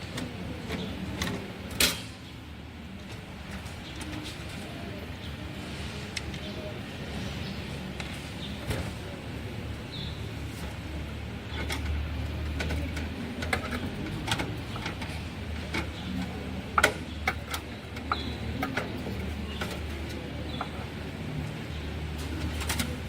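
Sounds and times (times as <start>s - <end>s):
computer parts clicking and knocking: 11.5s - 20.8s.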